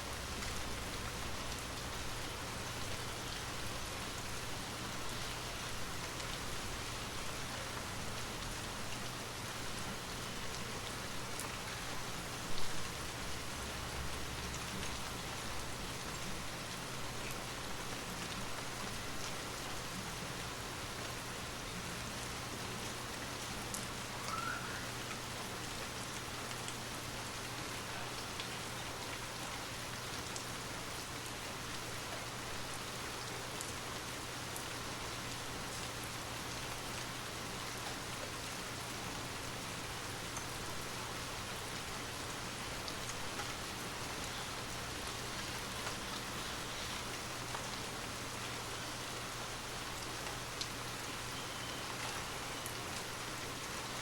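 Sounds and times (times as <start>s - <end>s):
rain falling: 0.0s - 54.0s.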